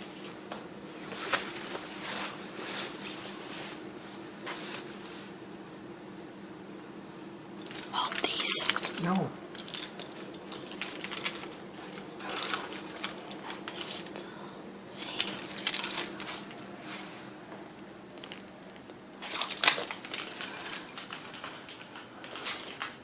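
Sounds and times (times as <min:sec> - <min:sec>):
faint steady hum: 0:00.0 - 0:23.0
small metal objects clinking: 0:07.6 - 0:14.1.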